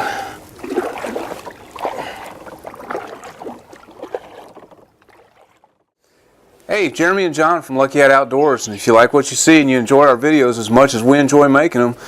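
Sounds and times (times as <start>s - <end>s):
water sloshing: 0.0s - 5.9s
paddle splashes: 0.4s - 5.9s.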